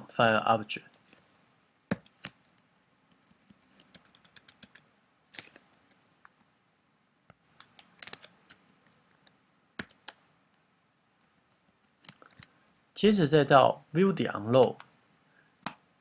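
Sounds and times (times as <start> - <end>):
computer keyboard typing: 1.9 - 5.6, 7.6 - 8.6, 9.2 - 10.2.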